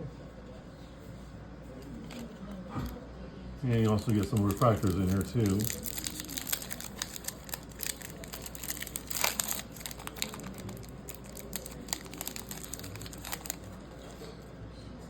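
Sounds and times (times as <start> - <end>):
foil wrapper crinkling: 3.8 - 14.3
cards shuffling: 3.9 - 13.8.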